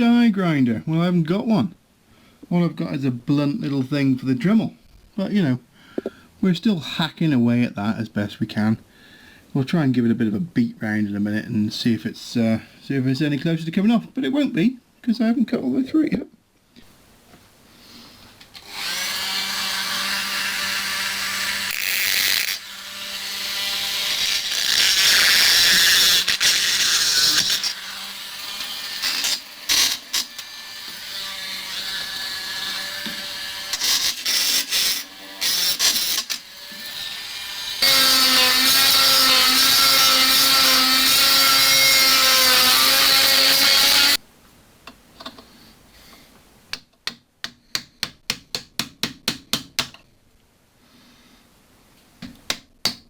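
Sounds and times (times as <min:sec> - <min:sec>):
rotary tool cutting metal: 0:18.6 - 0:44.2.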